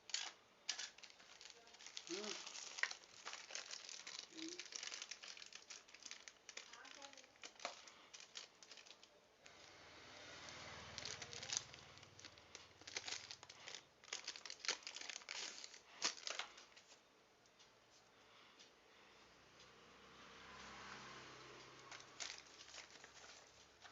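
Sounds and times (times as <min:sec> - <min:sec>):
packaging crinkling: 0:00.0 - 0:09.7, 0:10.9 - 0:17.0, 0:21.9 - 0:23.9.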